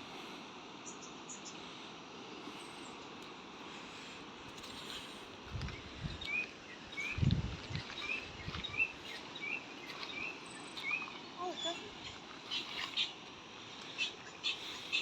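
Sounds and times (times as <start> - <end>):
outdoor background noise: 0.0 - 15.0
bird chirping: 5.7 - 13.2.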